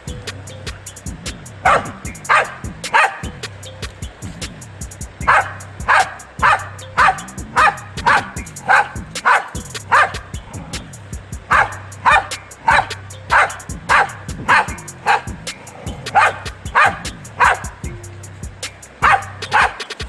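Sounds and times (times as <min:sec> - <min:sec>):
background music with low note: 0:00.0 - 0:20.0
dog barking: 0:01.6 - 0:03.4, 0:05.2 - 0:17.9, 0:19.0 - 0:20.0.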